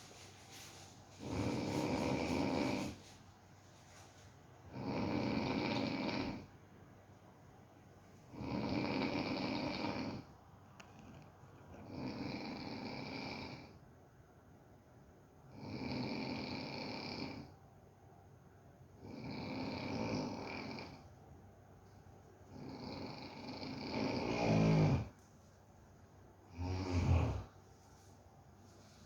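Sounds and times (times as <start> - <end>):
dog snoring: 1.2 - 3.1, 4.7 - 6.5, 8.3 - 10.3, 11.7 - 13.8, 15.5 - 17.6, 19.0 - 21.0, 22.5 - 25.1, 26.5 - 27.6.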